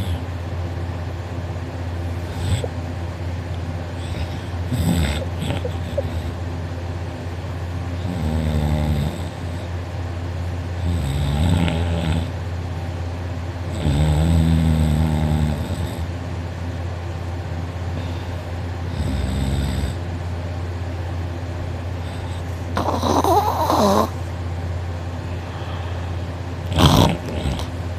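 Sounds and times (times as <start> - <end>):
man snoring: 0.0 - 0.3, 2.3 - 2.7, 4.0 - 6.4, 8.0 - 9.7, 10.8 - 12.4, 13.7 - 16.1, 18.9 - 20.0, 22.0 - 24.2, 26.7 - 27.8
steady low hum: 0.0 - 27.9.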